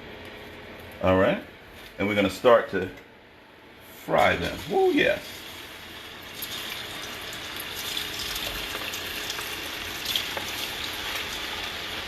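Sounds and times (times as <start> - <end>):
chicken frying in hot oil: 4.2 - 12.0.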